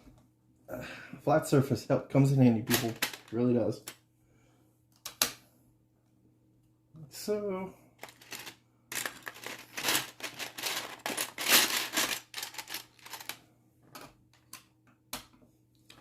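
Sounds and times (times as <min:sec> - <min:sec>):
plastic pieces clattering: 0:02.7 - 0:03.4, 0:08.0 - 0:13.4.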